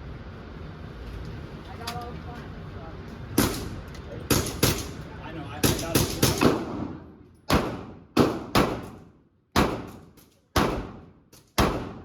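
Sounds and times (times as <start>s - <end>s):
pistol shots echoing indoors: 5.6s - 12.0s.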